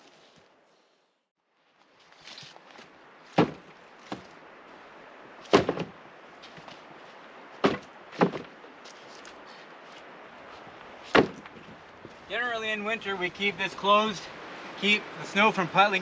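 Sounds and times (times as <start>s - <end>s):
sharp knocks: 3.4s - 4.3s, 5.5s - 6.0s, 7.6s - 8.5s, 11.1s - 11.6s.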